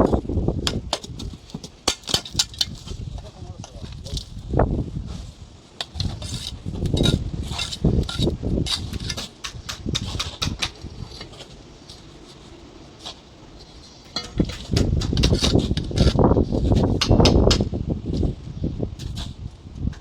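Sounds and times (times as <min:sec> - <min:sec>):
trowel clinking and scraping: 0:05.8 - 0:17.3.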